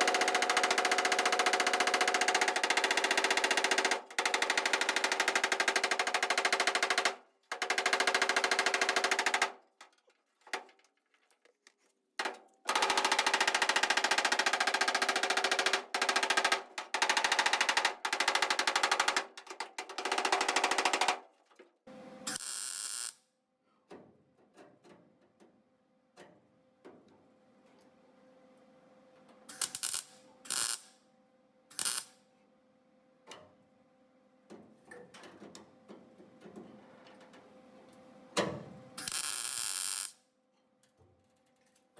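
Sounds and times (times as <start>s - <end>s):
welding arc crackling and buzzing: 22.3s - 23.2s, 29.5s - 30.8s, 31.8s - 32.1s, 39.0s - 40.2s.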